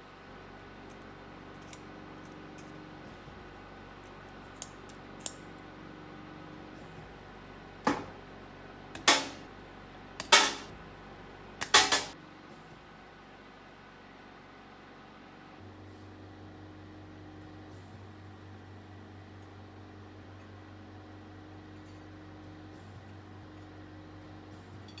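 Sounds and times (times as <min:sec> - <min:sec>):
metal clinking: 0:00.8 - 0:02.8, 0:09.0 - 0:09.5, 0:10.2 - 0:10.7, 0:11.3 - 0:12.2
ringing metallic knocks: 0:10.2 - 0:10.7.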